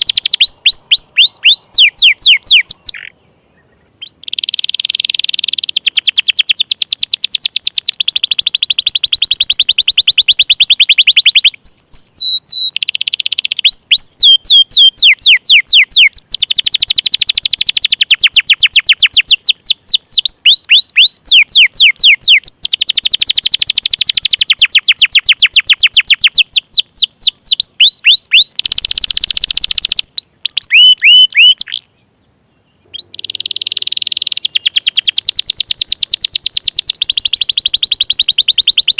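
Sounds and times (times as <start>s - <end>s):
canary singing fast trills: 0.0s - 38.9s.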